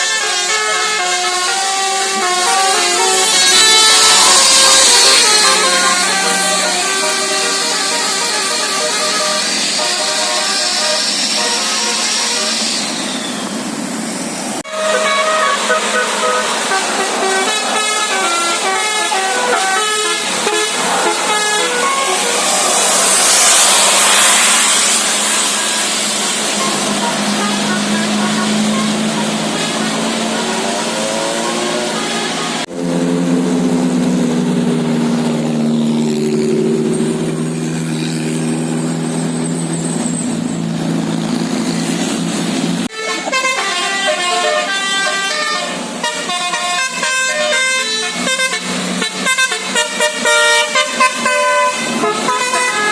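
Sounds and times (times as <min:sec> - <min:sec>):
musical air horn melody: 0:00.0 - 0:13.0, 0:14.6 - 0:33.0, 0:42.8 - 0:52.9.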